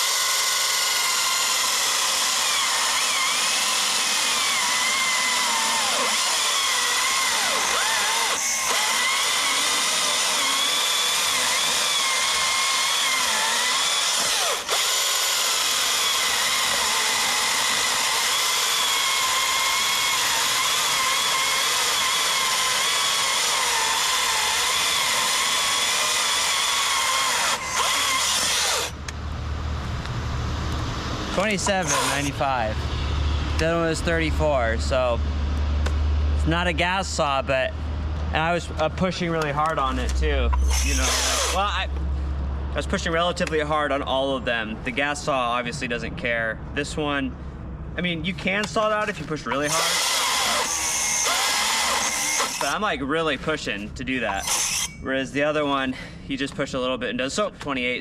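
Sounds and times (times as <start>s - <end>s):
battery chainsaw cutting wood: 0.0s - 29.0s, 31.4s - 32.5s, 40.6s - 41.8s, 49.6s - 52.9s, 54.3s - 55.0s.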